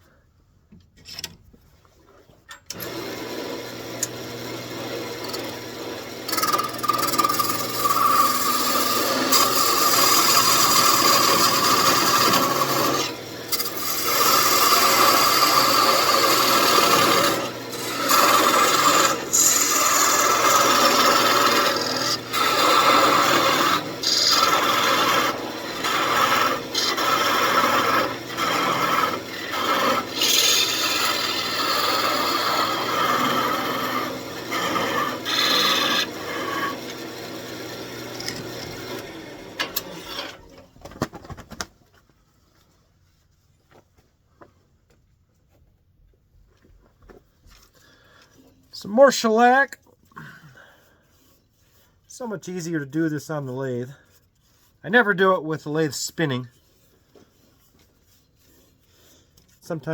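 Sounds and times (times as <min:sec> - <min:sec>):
turning tool scraping wood: 0:02.0 - 0:40.6, 0:50.6 - 0:59.9
lathe motor hum: 0:02.8 - 0:40.3.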